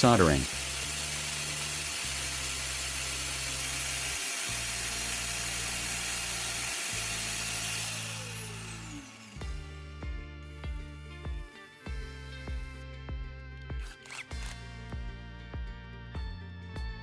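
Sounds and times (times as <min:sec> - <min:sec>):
grinding disc on metal rod: 0:00.0 - 0:09.4.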